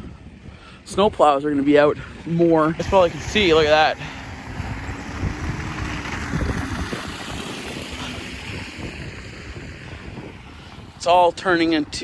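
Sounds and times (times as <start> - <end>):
wind buffeting microphone: 0.0 - 12.0
tyres hissing through slush: 2.8 - 10.9.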